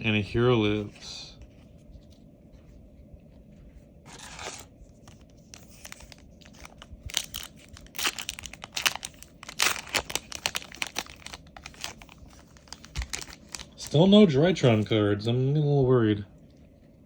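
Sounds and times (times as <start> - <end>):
foil wrapper tearing and crinkling: 4.1 - 14.0.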